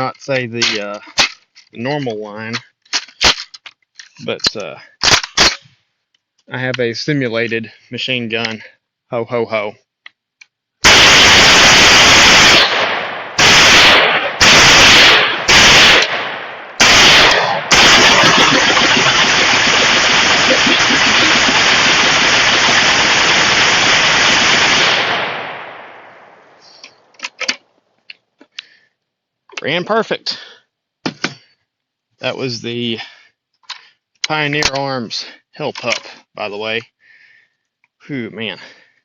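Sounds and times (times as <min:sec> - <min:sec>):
pistol automatic gunfire bursts: 0:10.8 - 0:26.0.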